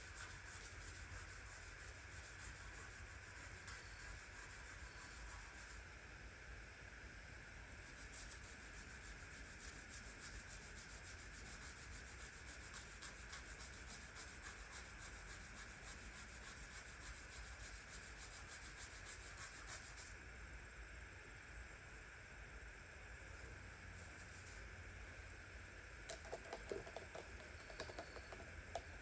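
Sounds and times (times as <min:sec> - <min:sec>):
rapid rubbing strokes on surface: 0:00.0 - 0:05.8, 0:07.8 - 0:20.2, 0:24.0 - 0:24.7.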